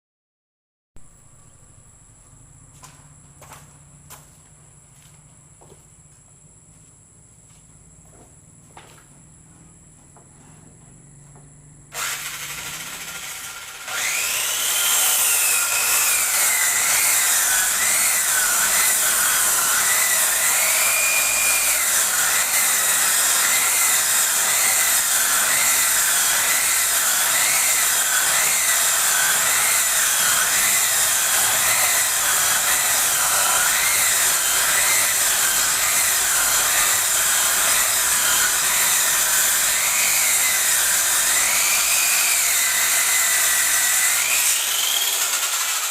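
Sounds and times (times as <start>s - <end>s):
circular saw ripping wood: 11.9s - 45.9s.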